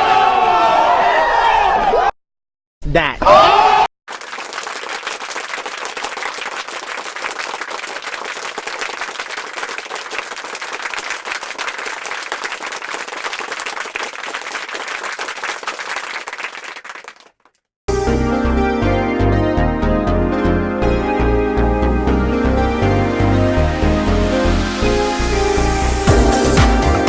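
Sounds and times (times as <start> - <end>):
crowd applause: 4.1 - 17.5, 26.0 - 27.0
music: 17.9 - 27.0.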